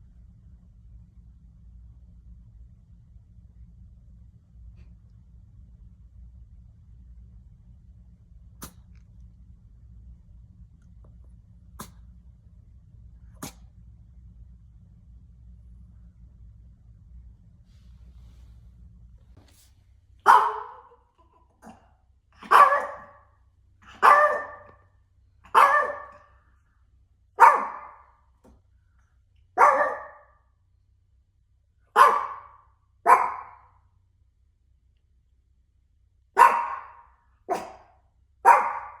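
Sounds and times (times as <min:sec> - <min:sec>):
small dog barking: 0:20.2 - 0:21.0, 0:21.6 - 0:26.4, 0:27.4 - 0:28.2, 0:29.6 - 0:30.4, 0:31.9 - 0:33.7, 0:36.4 - 0:39.0.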